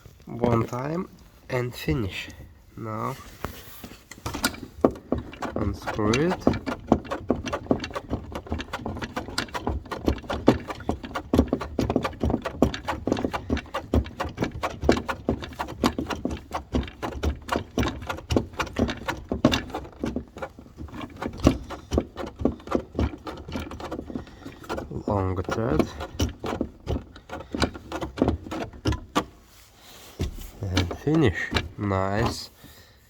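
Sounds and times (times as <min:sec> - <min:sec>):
metallic clicking of hand tool: 0:04.1 - 0:29.3.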